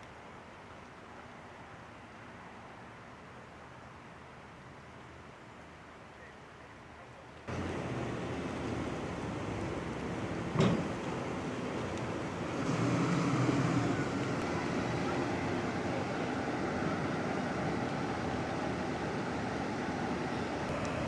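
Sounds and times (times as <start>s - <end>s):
outdoor background noise: 0.0s - 21.0s
vehicle passing with low hum: 7.5s - 21.0s.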